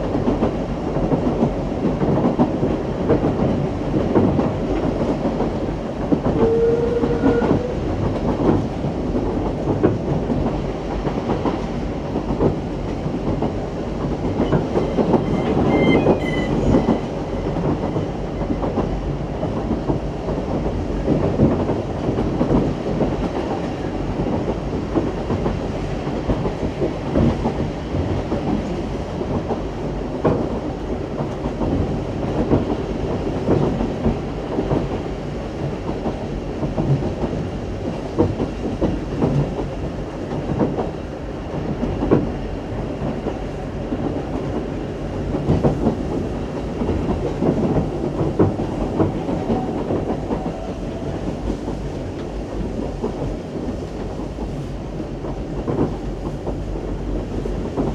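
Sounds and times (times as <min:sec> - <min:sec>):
train coaches rattling: 0:00.0 - 0:57.9
faint high squeal: 0:14.4 - 0:18.8
short tone: 0:14.8 - 0:18.6.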